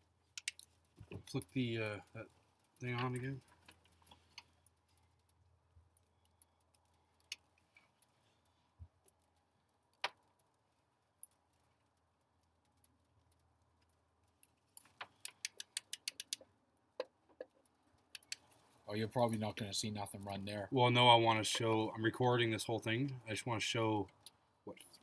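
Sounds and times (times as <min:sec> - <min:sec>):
light metallic clicks and rattles: 0:00.0 - 0:20.7.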